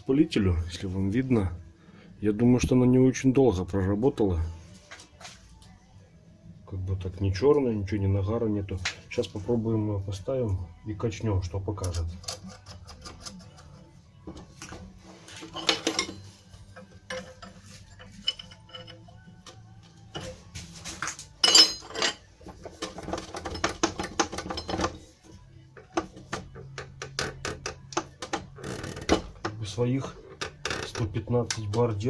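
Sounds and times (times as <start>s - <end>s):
metal clinks and knocks: 15.3s - 25.1s.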